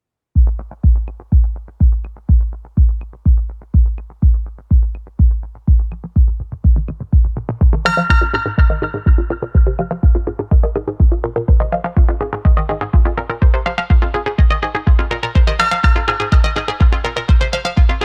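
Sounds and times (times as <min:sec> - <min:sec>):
booming drum-machine kick: 0:00.4 - 0:18.0
ticking hi-hats: 0:00.4 - 0:18.0
bright synth melody: 0:07.9 - 0:18.0.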